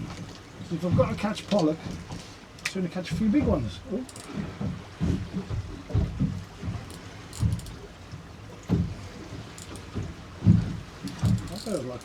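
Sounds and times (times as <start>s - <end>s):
wash of wind and water: 0.0s - 12.0s
water slapping against boat hull: 0.0s - 12.0s
light clicks: 4.1s - 4.4s, 11.0s - 12.0s.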